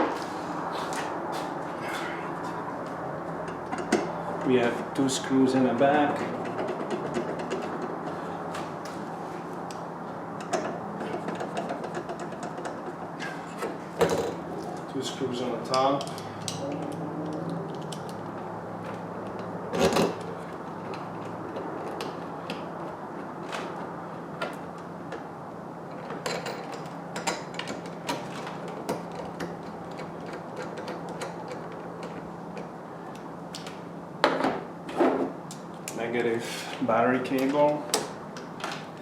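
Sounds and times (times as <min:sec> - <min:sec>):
hand tools clicking and knocking: 0:03.4 - 0:04.8, 0:06.1 - 0:08.6, 0:10.4 - 0:14.4, 0:15.7 - 0:18.2, 0:25.9 - 0:33.7.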